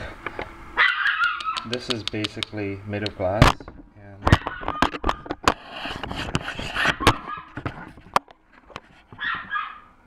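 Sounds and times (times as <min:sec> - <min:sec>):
sharp clicks and taps: 0:01.2 - 0:03.7.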